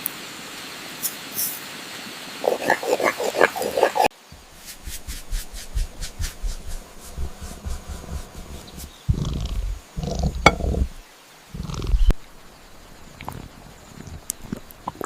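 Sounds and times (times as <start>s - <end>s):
low rhythmic rumble: 4.4s - 11.0s
cat grunting calls: 9.0s - 10.8s, 11.6s - 12.2s.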